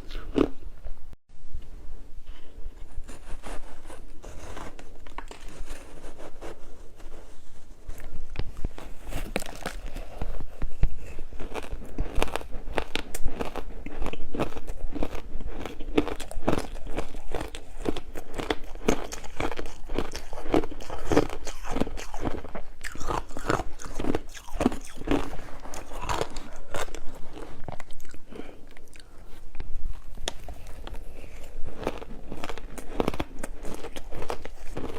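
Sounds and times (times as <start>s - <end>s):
crunching and chewing ice: 0.0s - 0.6s, 3.0s - 34.9s.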